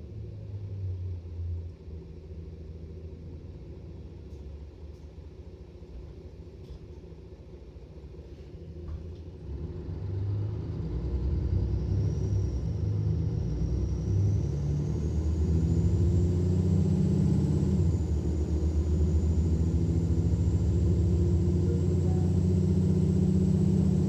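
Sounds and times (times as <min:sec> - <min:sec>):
diesel bus engine rumbling: 0:00.0 - 0:24.0
high turbo whine: 0:09.4 - 0:24.0.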